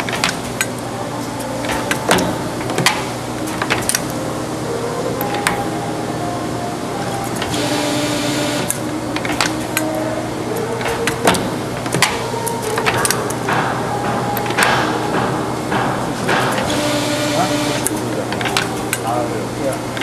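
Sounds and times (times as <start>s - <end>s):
constant machine hum: 0.0s - 20.0s
stepper motors whining: 0.0s - 20.0s
sharp clicks and knocks: 10.8s - 16.8s.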